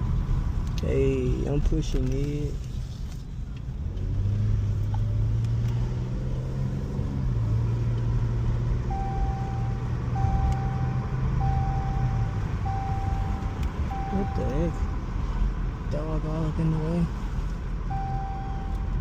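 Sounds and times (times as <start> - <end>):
car engine accelerating: 0.0 - 19.0
electronic beep: 8.9 - 14.7, 17.9 - 18.9.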